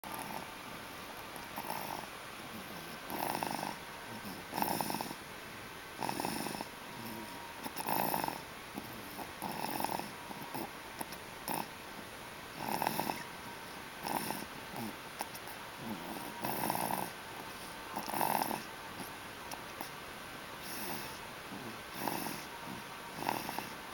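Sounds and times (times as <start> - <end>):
little boy snoring loudly: 1.6 - 5.2, 6.0 - 10.7, 11.4 - 11.7, 12.6 - 13.3, 14.0 - 15.0, 15.8 - 17.2, 17.9 - 18.7, 20.6 - 23.8.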